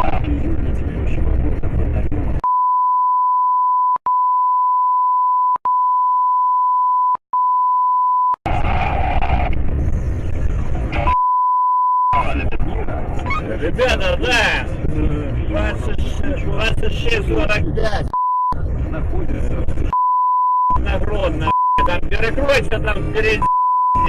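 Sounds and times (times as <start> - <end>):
censor bleep tone: 2.4 - 8.4, 11.1 - 12.2, 19.9 - 20.8, 23.4 - 24.0
loud noise: 8.4 - 11.2.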